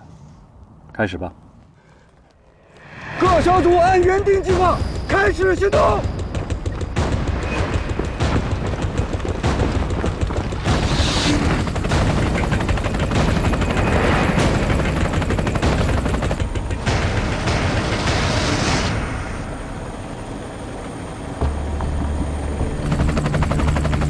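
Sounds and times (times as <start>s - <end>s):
booms: 3.1s - 19.6s
rapid automatic gunfire: 5.7s - 18.8s.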